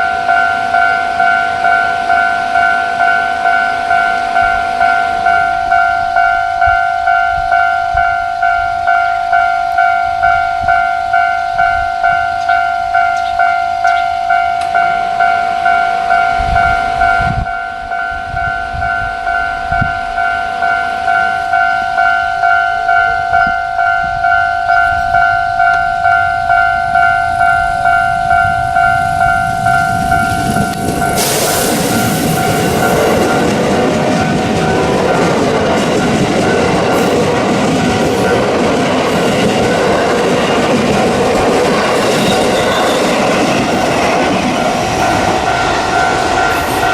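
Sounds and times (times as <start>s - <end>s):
two-tone crossing bell clanging: 0.0s - 46.9s
train rushing past: 24.6s - 46.9s.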